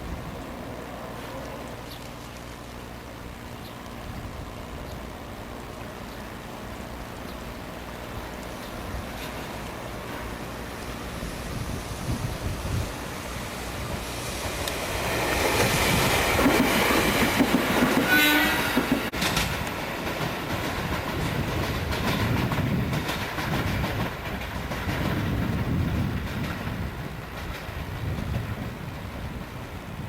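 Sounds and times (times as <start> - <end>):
train wheels rumbling on rails: 0.0 - 30.0
rail-joint clatter: 7.2 - 10.5, 13.9 - 29.1
train horn: 17.8 - 19.1.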